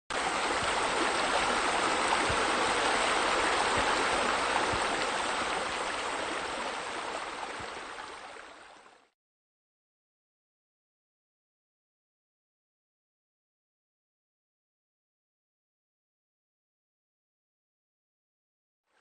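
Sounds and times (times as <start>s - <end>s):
running water rushing: 0.1s - 9.1s.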